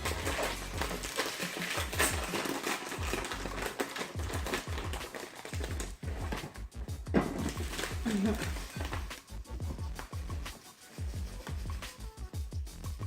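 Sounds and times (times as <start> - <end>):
electronic music with bass line: 5.7 - 13.0.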